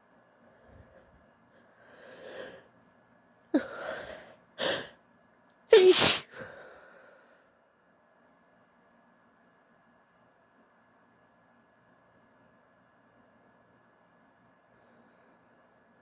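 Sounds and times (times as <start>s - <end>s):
woman breathing: 0.4s - 2.8s, 3.6s - 5.0s
woman sneezing: 5.7s - 6.3s.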